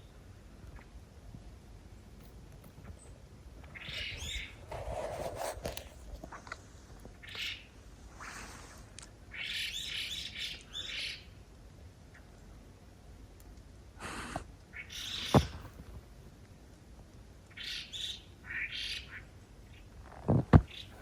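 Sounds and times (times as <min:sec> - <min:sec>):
wild birds calling: 0:02.7 - 0:04.7, 0:07.1 - 0:08.5, 0:09.2 - 0:11.4, 0:14.0 - 0:15.7, 0:17.5 - 0:20.0, 0:20.7 - 0:21.0.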